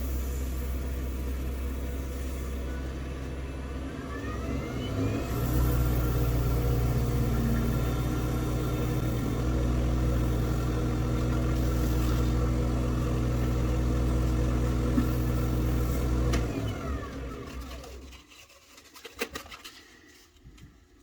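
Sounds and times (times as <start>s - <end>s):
wood lathe motor humming: 4.1s - 18.0s.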